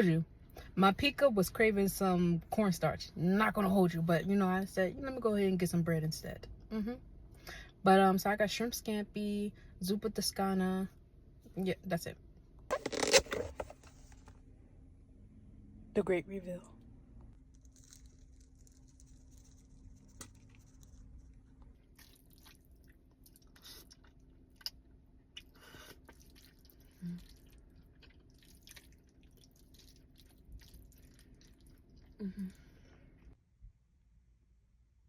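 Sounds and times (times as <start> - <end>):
chewing: 17.6 - 21.2, 21.9 - 24.8, 25.4 - 32.2.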